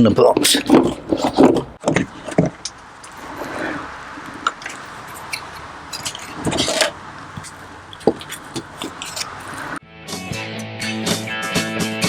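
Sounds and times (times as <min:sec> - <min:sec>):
loud scrape: 0:00.5 - 0:09.8.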